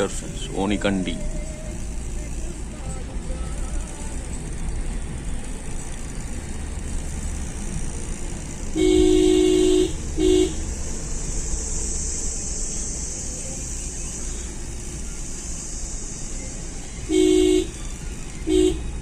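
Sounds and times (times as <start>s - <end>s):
car road and engine noise: 0.0s - 19.0s
car horn blasts: 8.7s - 10.7s, 17.0s - 19.0s.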